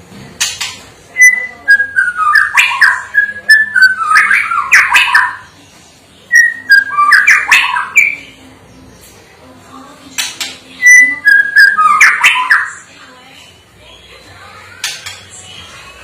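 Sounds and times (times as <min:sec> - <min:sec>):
bird singing whistled notes: 0:01.2 - 0:05.4, 0:06.3 - 0:08.3, 0:10.8 - 0:12.8.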